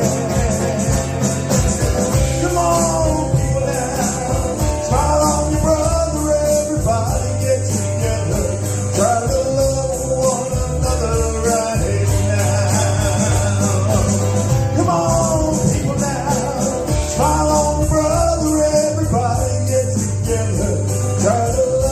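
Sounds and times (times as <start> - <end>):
rock and roll band playing: 0.0 - 21.9.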